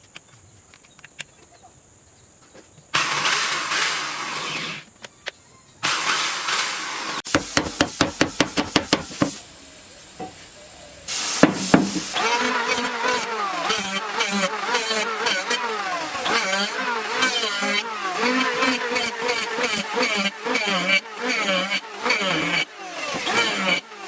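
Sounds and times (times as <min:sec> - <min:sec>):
power tool motor: 0:02.9 - 0:05.0, 0:05.8 - 0:09.4, 0:11.1 - 0:24.0.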